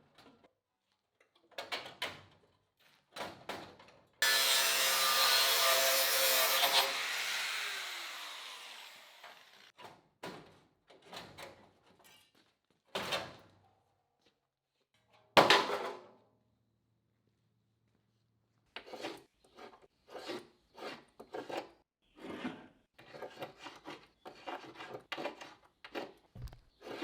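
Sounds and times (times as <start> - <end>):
power tool whining on sheet metal: 4.2 - 9.7
metalwork knocks and scrapes: 26.4 - 27.0.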